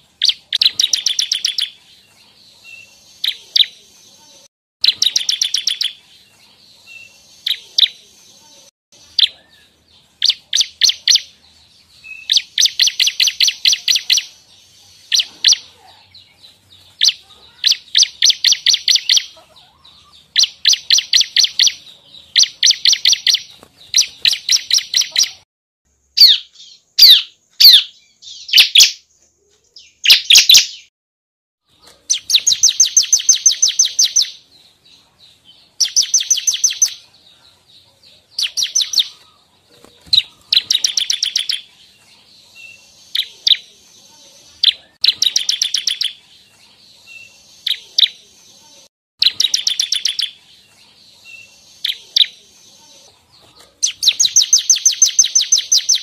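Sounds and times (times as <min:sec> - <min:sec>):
bird singing rapid high notes: 0:04.8 - 0:06.0, 0:26.2 - 0:29.0.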